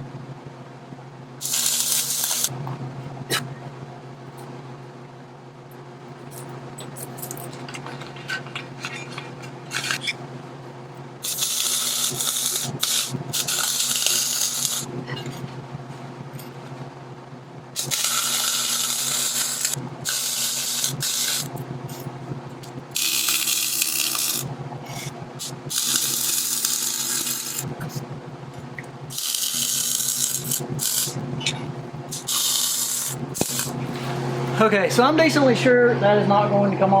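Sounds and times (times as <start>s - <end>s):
welding machine hum: 1.0s - 5.0s, 5.6s - 36.4s
welder crackling hiss: 1.4s - 2.5s, 11.2s - 14.9s, 17.8s - 28.0s, 29.1s - 31.2s, 32.0s - 34.6s.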